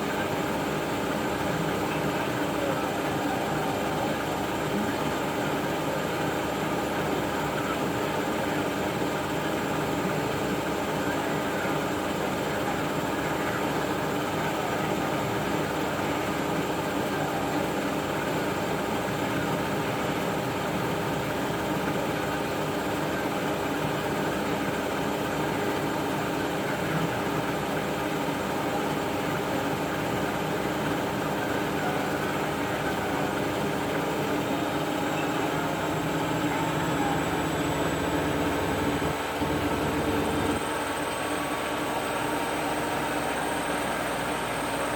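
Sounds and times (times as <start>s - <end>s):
washing machine motor hum: 0.0s - 44.9s.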